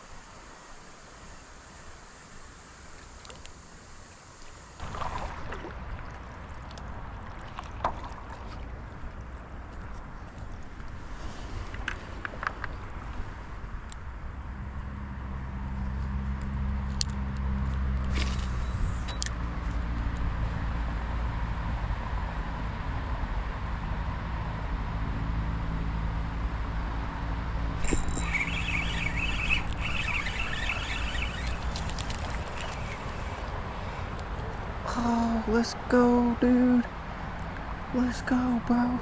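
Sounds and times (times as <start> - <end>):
engine droning: 0.0 - 39.0
higher fluttering chatter: 27.9 - 33.5.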